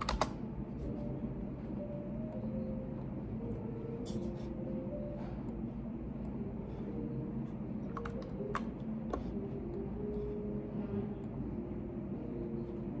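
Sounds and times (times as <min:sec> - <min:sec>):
computer keyboard keystrokes: 0:00.0 - 0:00.4, 0:07.9 - 0:09.2
low hum of office room noise: 0:00.0 - 0:13.0.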